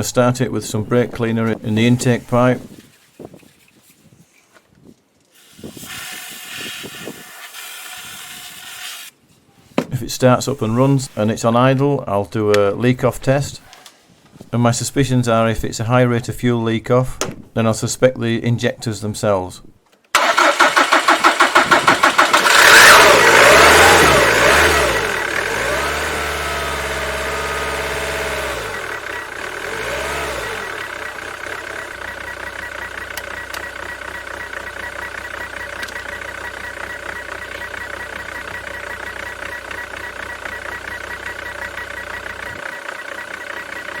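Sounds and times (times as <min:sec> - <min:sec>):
diesel engine revving: 0:20.2 - 0:44.0
engine cranking on starter: 0:20.2 - 0:44.0
engine idling: 0:20.2 - 0:44.0.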